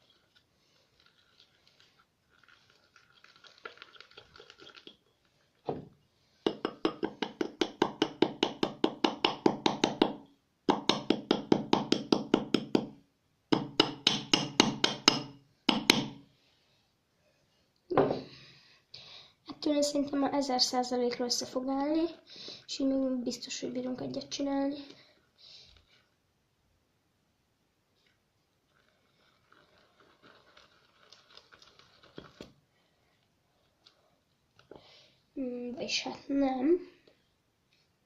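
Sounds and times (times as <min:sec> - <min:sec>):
stick stirring slime squeaking: 0:00.0 - 0:05.2, 0:28.7 - 0:32.6.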